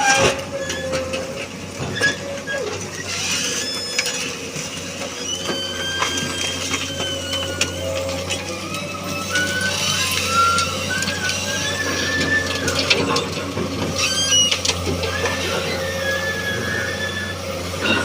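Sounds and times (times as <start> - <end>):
excavator engine hum: 0.0 - 18.0
hydraulic whine: 0.0 - 18.0
high squeaks: 5.2 - 13.2, 13.9 - 18.0.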